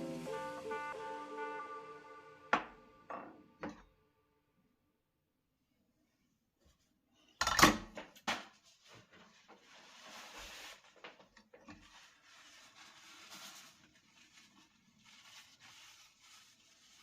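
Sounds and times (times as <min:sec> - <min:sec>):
kitchenware clattering and knocking: 0:07.4 - 0:08.5.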